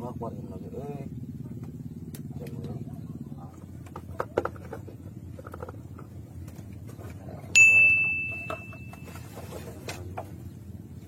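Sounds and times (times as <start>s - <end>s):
small metal bell ringing: 7.6s - 9.3s.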